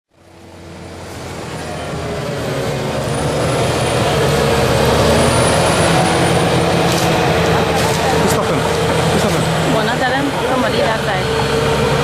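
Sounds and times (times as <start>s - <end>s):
bulldozer diesel engine running: 0.1s - 12.0s.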